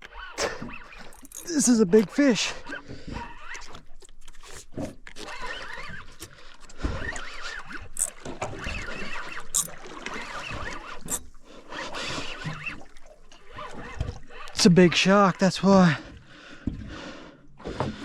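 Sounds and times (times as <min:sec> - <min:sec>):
fishing reel clicking: 0:01.0 - 0:01.6, 0:08.0 - 0:08.3, 0:09.1 - 0:11.4
short squeaky chirps: 0:01.0 - 0:01.6, 0:08.0 - 0:08.2, 0:09.5 - 0:09.8, 0:10.5 - 0:11.4.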